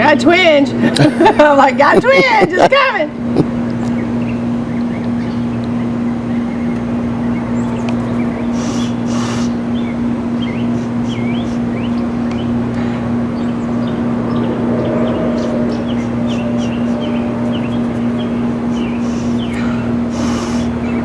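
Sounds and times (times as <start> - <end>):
steady low hum: 0.0 - 21.0
small birds chirping: 3.4 - 21.0
short hissy bursts: 8.5 - 9.6, 18.7 - 19.4, 20.1 - 20.7.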